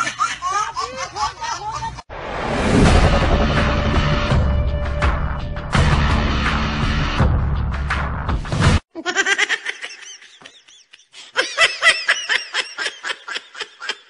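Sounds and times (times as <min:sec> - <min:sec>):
music: 0:02.6 - 0:08.8.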